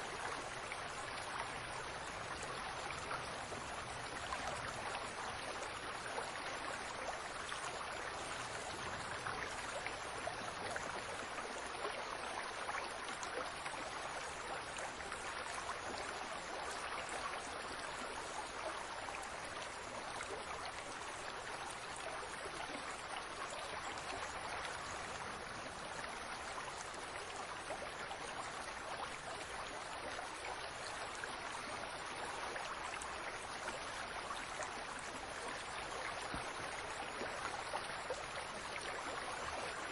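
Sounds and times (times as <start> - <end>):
fountain water splashing: 18.9 - 39.9.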